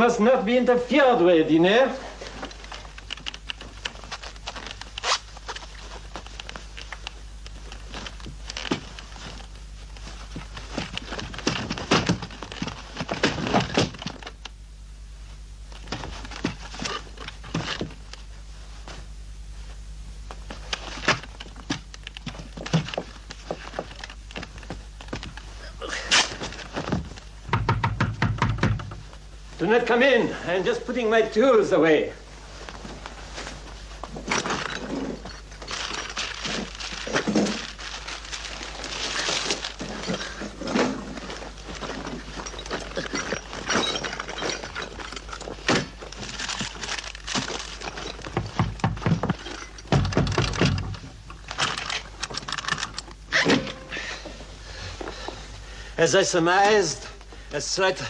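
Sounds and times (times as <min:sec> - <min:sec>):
steady low hum: 0:00.0 - 0:58.0
crashes of things breaking: 0:34.2 - 0:52.7
clatter of small hard objects: 0:34.2 - 0:53.1.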